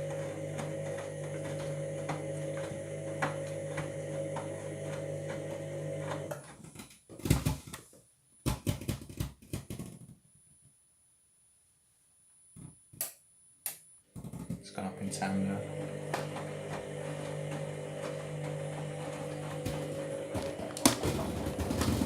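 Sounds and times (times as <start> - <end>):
washing machine drum humming: 0.0 - 6.3, 14.4 - 22.0.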